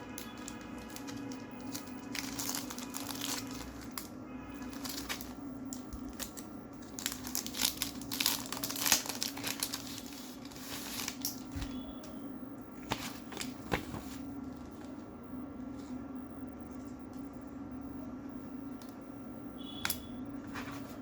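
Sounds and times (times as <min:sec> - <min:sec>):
low steady hum: 0:00.0 - 0:21.0
packaging crinkling: 0:00.1 - 0:11.8.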